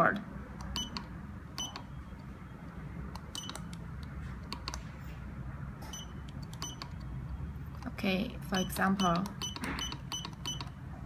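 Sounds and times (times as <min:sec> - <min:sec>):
low steady hum: 0:00.0 - 0:11.0
short high keypad beeps: 0:00.8 - 0:01.0, 0:01.6 - 0:02.0, 0:03.3 - 0:03.7, 0:05.9 - 0:07.0, 0:08.6 - 0:10.8.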